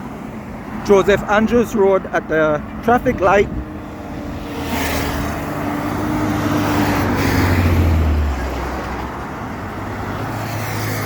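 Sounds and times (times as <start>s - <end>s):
vehicle passing close by: 2.8s - 11.0s.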